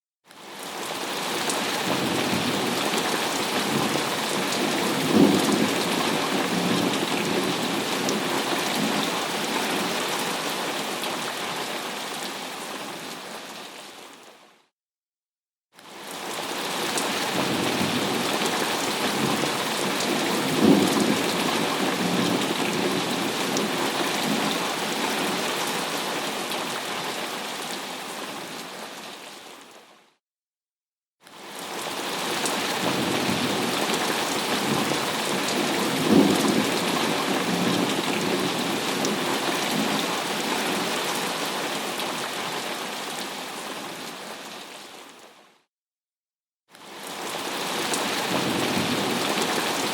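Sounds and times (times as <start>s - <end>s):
heavy rain: 0.4s - 14.2s, 15.9s - 29.7s, 31.4s - 45.3s, 46.8s - 49.9s.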